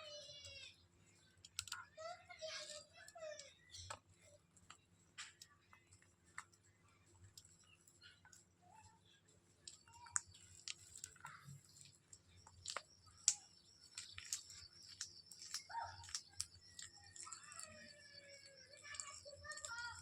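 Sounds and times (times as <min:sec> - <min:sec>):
parrots clicking beaks: 0:01.4 - 0:01.9, 0:09.6 - 0:20.0.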